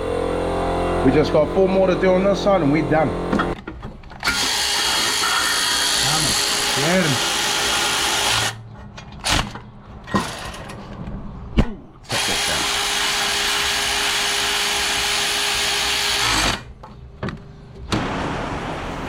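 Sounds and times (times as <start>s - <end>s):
power tool running: 0.0s - 3.6s, 4.2s - 8.6s, 12.1s - 16.7s.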